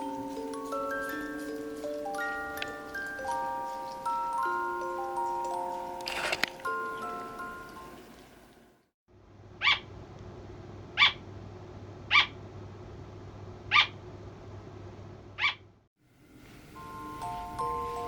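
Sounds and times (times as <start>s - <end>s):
slow loris sharp high calls: 9.6s - 9.8s, 11.0s - 11.2s, 12.1s - 12.4s, 13.7s - 14.0s.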